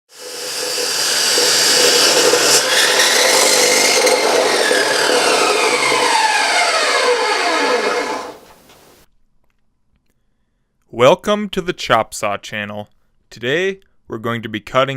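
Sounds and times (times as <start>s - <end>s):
chop saw whining: 0.1s - 9.0s.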